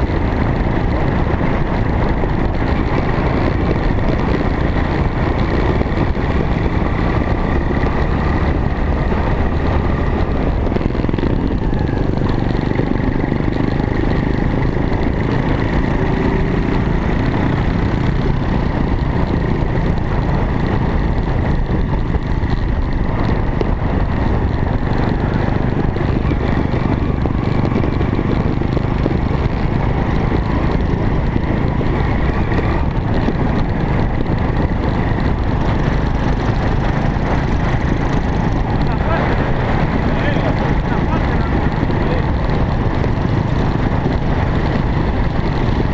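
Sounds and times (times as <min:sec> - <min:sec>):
continuous rushing noise: 0:00.0 - 0:45.9
off-road vehicle engine running: 0:00.0 - 0:45.9.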